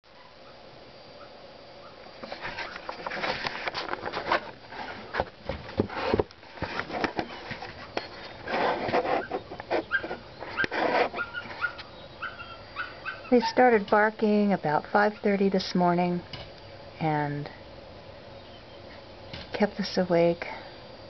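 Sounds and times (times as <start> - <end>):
dogs barking: 0.1 - 2.1, 9.8 - 13.7.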